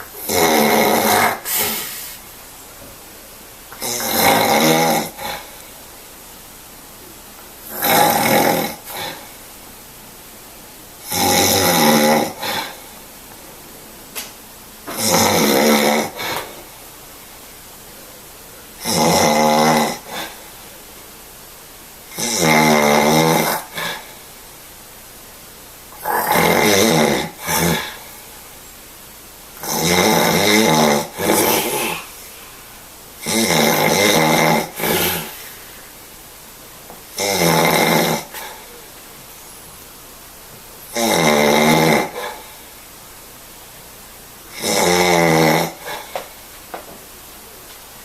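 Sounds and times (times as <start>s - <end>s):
person snoring loudly: 0.0s - 2.2s, 3.8s - 5.6s, 7.6s - 9.4s, 11.0s - 12.9s, 14.9s - 16.7s, 18.8s - 20.4s, 22.1s - 24.2s, 25.9s - 28.2s, 29.6s - 32.3s, 33.2s - 35.6s, 37.1s - 38.8s, 40.9s - 42.6s, 44.5s - 46.2s
soft snort: 0.0s - 2.3s, 3.8s - 5.7s, 7.6s - 9.4s, 11.0s - 13.0s, 14.9s - 16.7s, 18.8s - 20.5s, 22.1s - 24.2s, 26.0s - 28.4s, 29.6s - 35.8s, 37.1s - 38.8s, 40.9s - 42.7s, 44.5s - 46.4s.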